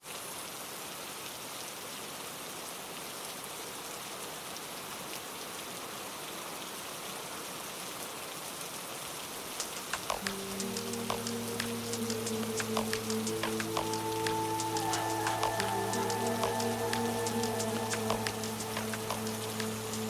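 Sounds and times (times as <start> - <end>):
steady rain falling: 0.0 - 20.0
sharp raindrops landing close: 9.5 - 20.0.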